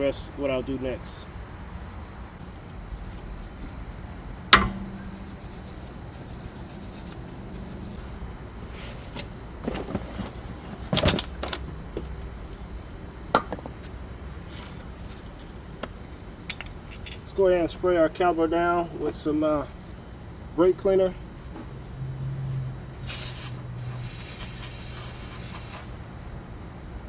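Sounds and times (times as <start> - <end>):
low steady hum: 0.0 - 23.8
knocks of parts: 4.5 - 5.1
metal tool clanking: 4.5 - 5.3, 16.5 - 17.3.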